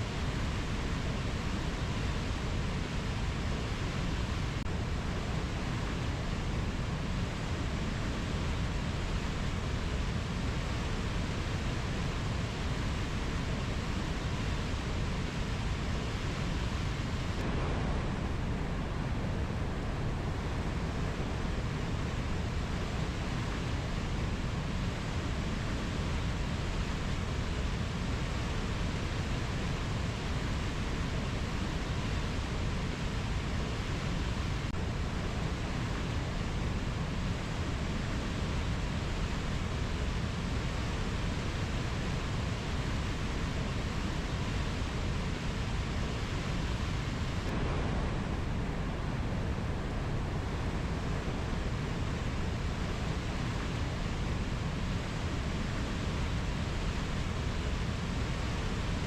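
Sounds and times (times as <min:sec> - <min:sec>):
steady low rushing noise: 0:16.3 - 0:22.7, 0:44.6 - 0:58.0.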